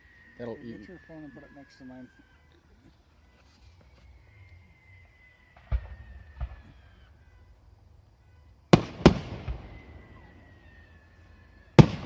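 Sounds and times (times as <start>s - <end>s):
firework sharp cracks: 5.5s - 7.0s, 8.7s - 10.0s, 11.8s - 12.0s
firework shell booms: 8.7s - 9.8s, 11.8s - 12.0s.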